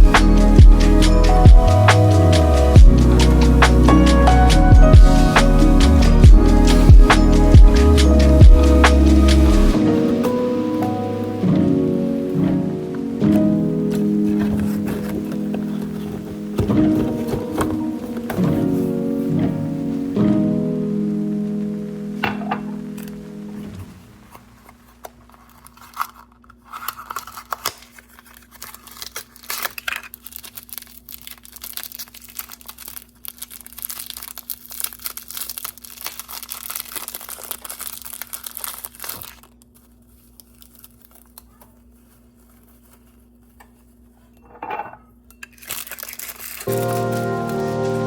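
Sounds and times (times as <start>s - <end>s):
packaging crinkling and rustling: 13.2s - 19.6s, 22.3s - 44.4s, 45.4s - 48.0s.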